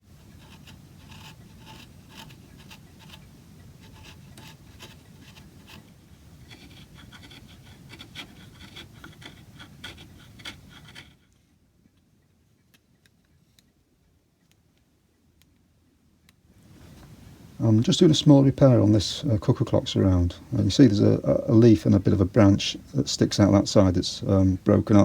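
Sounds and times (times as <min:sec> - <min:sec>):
scratching and rubbing with clicks: 0:00.0 - 0:11.4.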